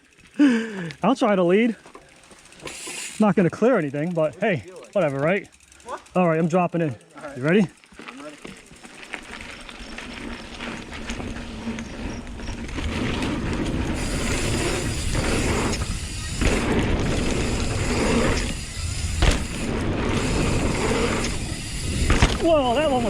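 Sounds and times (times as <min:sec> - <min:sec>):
bike rattling: 0:00.0 - 0:23.0
tyres on dirt: 0:00.0 - 0:23.0
wind rushing over microphone: 0:11.2 - 0:23.0
bike landing knocks: 0:19.1 - 0:20.2, 0:22.0 - 0:22.6.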